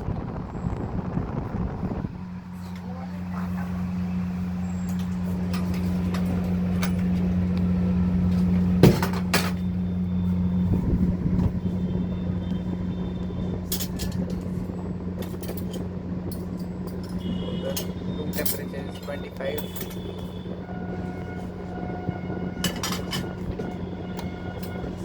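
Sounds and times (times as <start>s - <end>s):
air conditioner humming: 0.0s - 25.0s.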